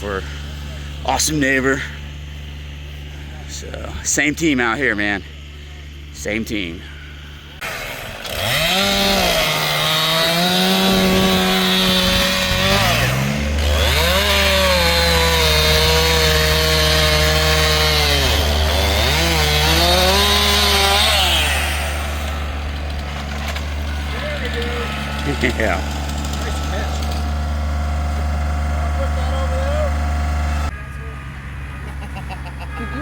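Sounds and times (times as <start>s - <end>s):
chainsaw cutting wood: 0.0s - 3.3s, 4.4s - 30.7s
steady low drone: 9.0s - 15.2s.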